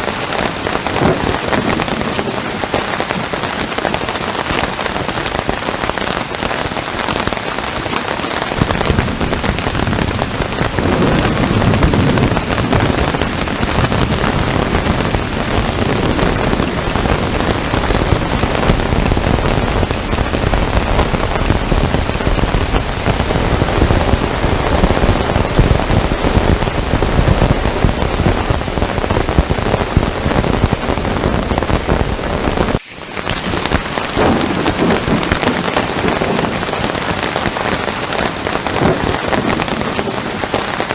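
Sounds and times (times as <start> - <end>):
heavy rain pouring: 0.0 - 40.9
low rumble of thunder: 8.5 - 40.8.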